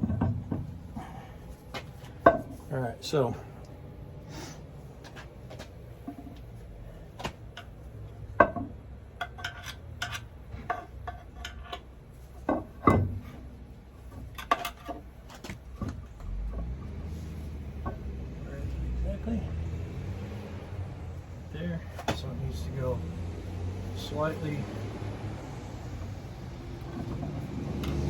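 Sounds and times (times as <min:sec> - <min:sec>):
metal tools clinking and knocking: 0:08.4 - 0:11.9.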